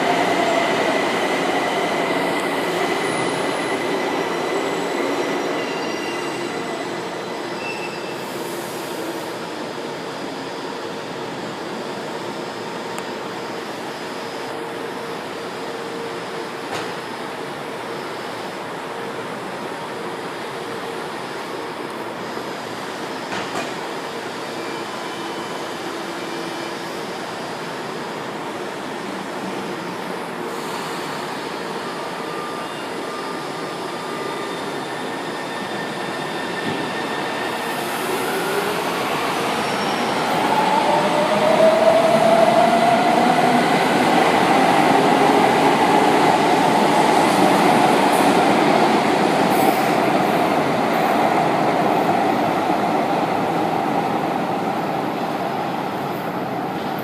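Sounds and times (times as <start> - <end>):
metro train rumbling: 0.0 - 57.0.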